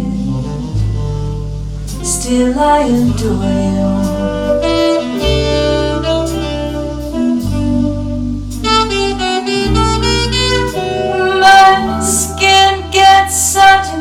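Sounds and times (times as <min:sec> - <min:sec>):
bass notes: 0:00.0 - 0:14.0
tenor saxophone: 0:00.0 - 0:14.0
person singing: 0:11.0 - 0:14.0.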